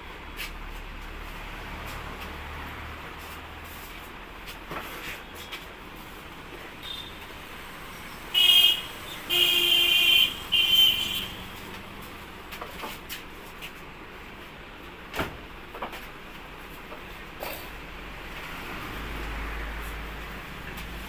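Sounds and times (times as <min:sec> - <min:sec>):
vehicle horn honking: 0:06.8 - 0:07.2, 0:08.3 - 0:11.5.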